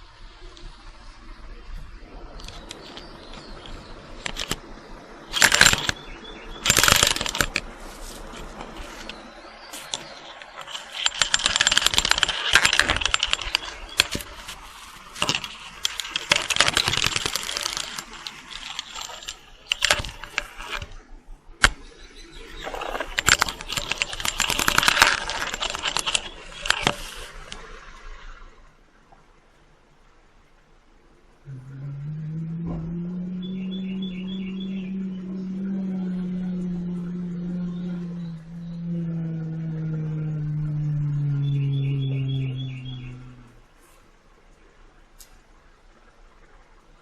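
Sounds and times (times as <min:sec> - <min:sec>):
sharp clicks: 0:05.3 - 0:06.0, 0:06.6 - 0:07.7, 0:09.8 - 0:21.0, 0:22.5 - 0:27.6
metallic jangling and clattering: 0:05.4 - 0:06.0, 0:06.6 - 0:07.6, 0:09.8 - 0:20.9, 0:22.6 - 0:27.0.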